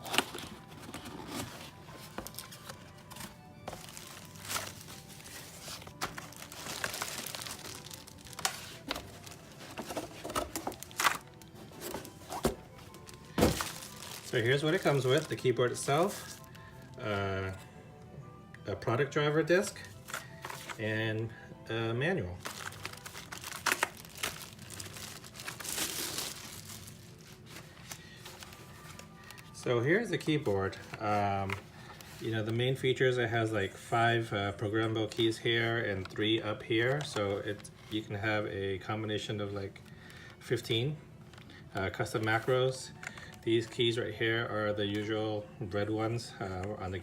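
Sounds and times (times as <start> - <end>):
packaging rustling and crinkling: 0.0 - 17.0, 19.7 - 20.8, 22.4 - 29.6, 30.3 - 32.6.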